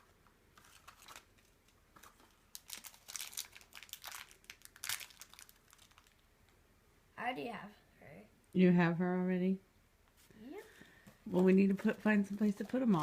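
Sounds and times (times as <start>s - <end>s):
packaging crinkling: 0.2s - 6.3s, 11.3s - 13.0s.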